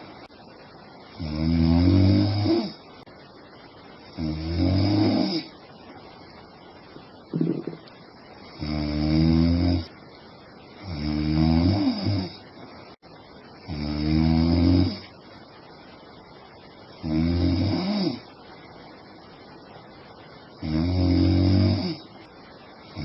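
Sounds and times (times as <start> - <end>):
woman snoring: 1.2 - 2.8, 4.2 - 5.5, 10.9 - 12.4, 17.0 - 18.3, 20.6 - 22.1.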